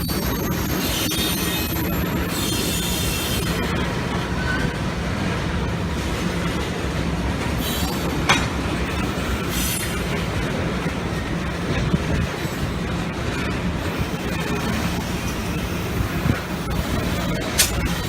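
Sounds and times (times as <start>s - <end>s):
train wheel squeal: 0.0s - 3.6s
sharp clack: 17.6s - 17.9s.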